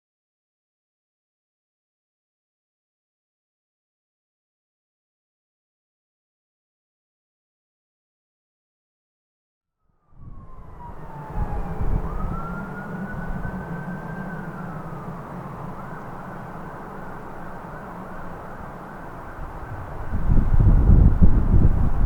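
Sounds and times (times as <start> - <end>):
distant emergency siren: 9.9 - 22.0
low rumble: 10.2 - 22.0.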